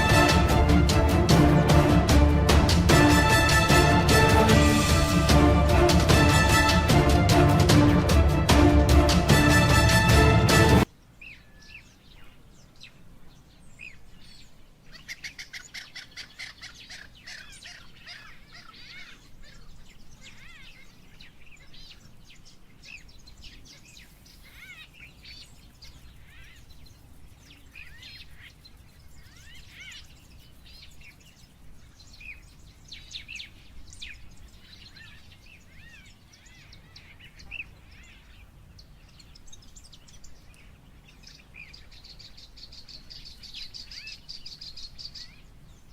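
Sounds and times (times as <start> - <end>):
birds chirping and trilling: 10.9 - 45.9.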